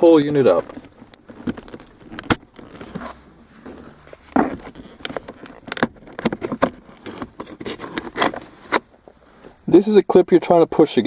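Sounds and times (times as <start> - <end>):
plastic panel clicks and rattles: 4.4 - 8.8.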